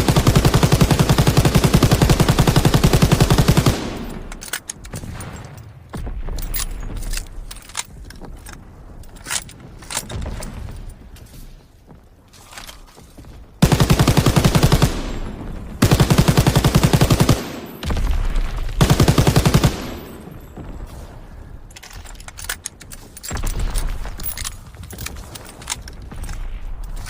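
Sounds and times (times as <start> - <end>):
machine gun automatic fire: 0.0 - 4.4, 13.6 - 18.1, 18.7 - 20.2.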